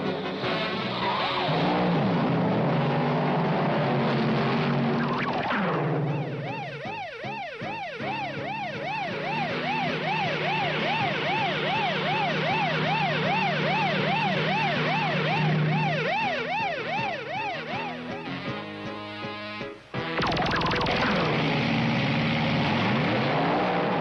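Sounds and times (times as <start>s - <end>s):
cartoon siren wailing: 5.0s - 18.1s, 20.2s - 21.7s.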